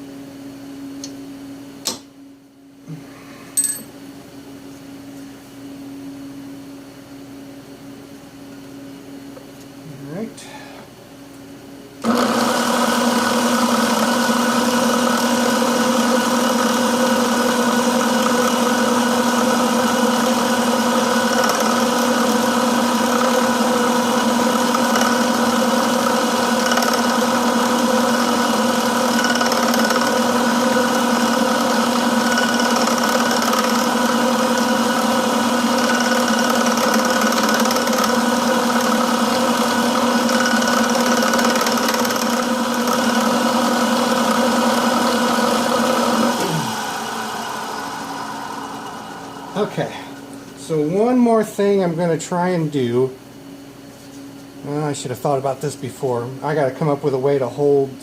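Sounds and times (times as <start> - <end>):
milling machine motor hum: 12.0 - 51.3.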